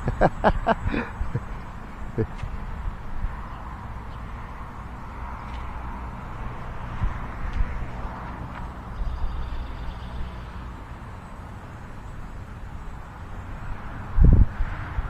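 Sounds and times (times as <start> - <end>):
wind buffeting microphone: 0.0 - 9.4, 13.6 - 15.0.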